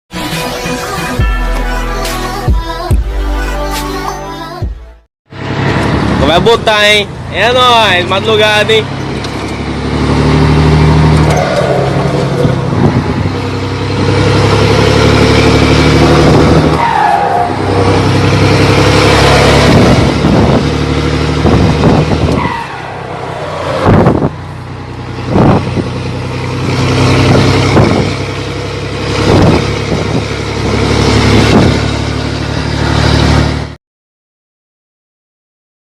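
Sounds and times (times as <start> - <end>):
diesel truck engine rumbling: 5.3 - 33.8.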